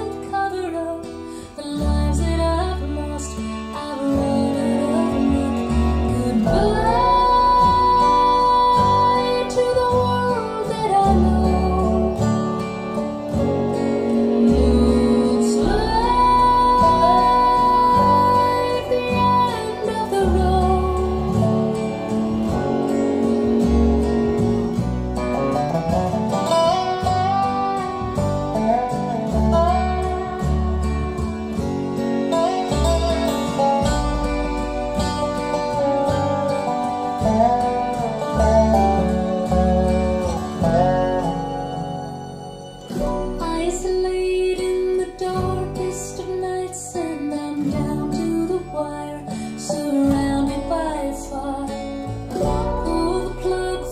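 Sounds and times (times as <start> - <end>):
woman singing: 0.0 - 13.4, 14.1 - 23.5, 43.0 - 53.9
acoustic guitar: 0.0 - 53.9.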